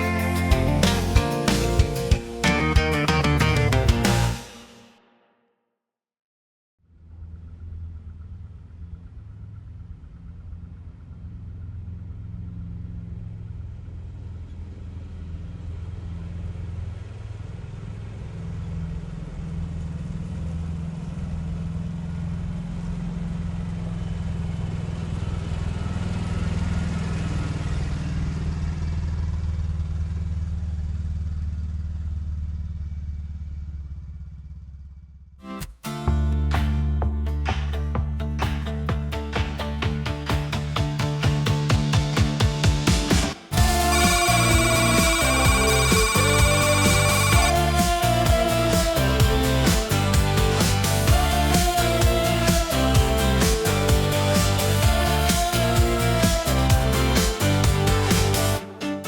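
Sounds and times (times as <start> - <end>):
atv engines running: 43.6 - 58.6.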